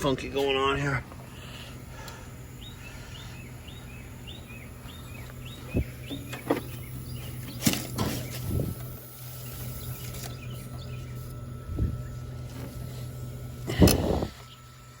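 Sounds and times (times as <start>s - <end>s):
air conditioner humming: 0.0s - 15.0s
bird chirping: 2.5s - 8.7s, 9.3s - 12.4s.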